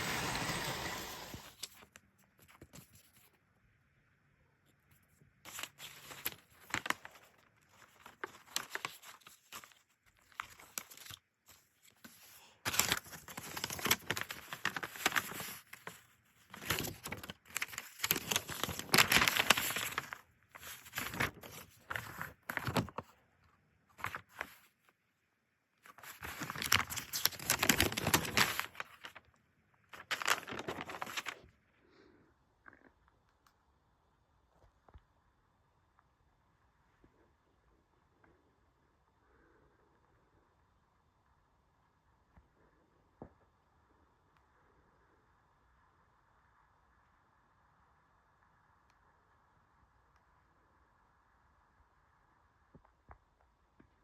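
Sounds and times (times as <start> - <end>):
packing material crinkling: 5.5 - 23.1, 25.9 - 29.2, 29.9 - 31.5
packing material tearing: 26.2 - 29.1, 30.0 - 31.4.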